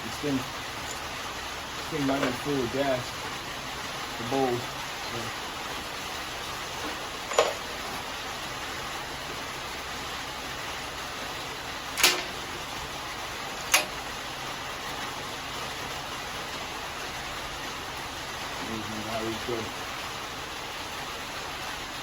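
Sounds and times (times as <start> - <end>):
steady hiss: 0.0 - 22.0
knocks of tools handling parts: 6.8 - 7.7, 12.0 - 12.4.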